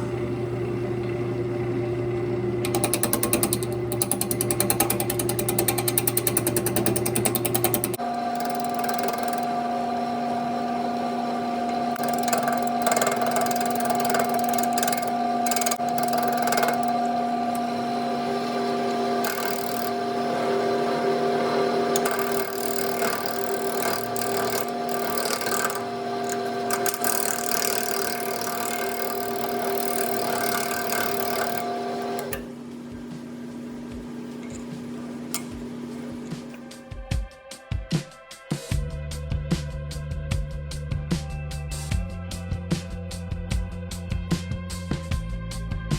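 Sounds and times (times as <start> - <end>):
wood lathe motor hum: 0.0 - 32.5
turning tool scraping wood: 2.7 - 9.6, 11.7 - 32.3.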